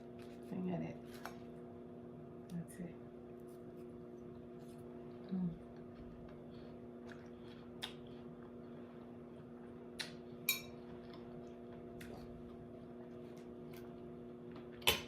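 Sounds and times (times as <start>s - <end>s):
steady low hum: 0.0s - 15.0s
fork clinking against bowl: 10.5s - 10.8s.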